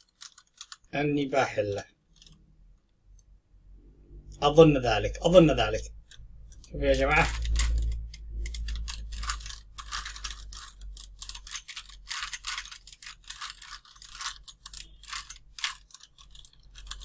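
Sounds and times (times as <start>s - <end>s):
puzzle cube clicking as twisted: 0.0s - 0.9s, 6.0s - 17.0s.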